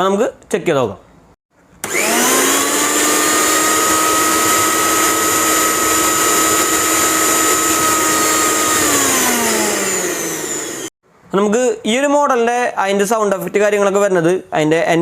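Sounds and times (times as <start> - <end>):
mixer grinder motor whining: 1.8 - 11.0.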